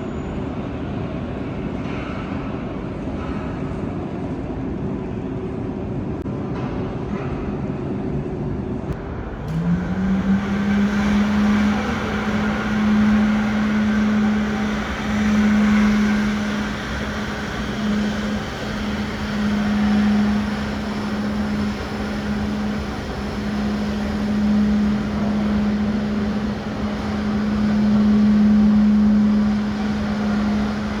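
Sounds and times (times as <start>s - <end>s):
jet engines droning: 7.9s - 31.0s.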